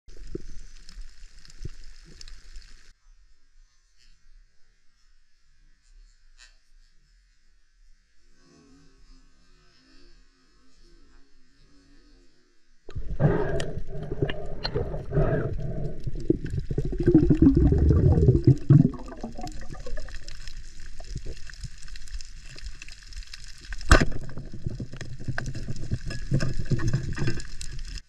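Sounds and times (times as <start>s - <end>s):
water gurgling and bubbling: 12.9s - 21.8s, 23.9s - 28.0s.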